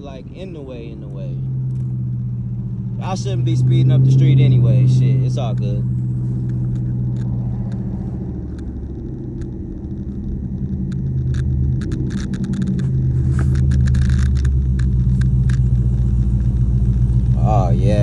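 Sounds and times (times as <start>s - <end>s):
car engine low rumble: 0.0s - 18.0s
sharp clicks: 6.4s - 17.3s.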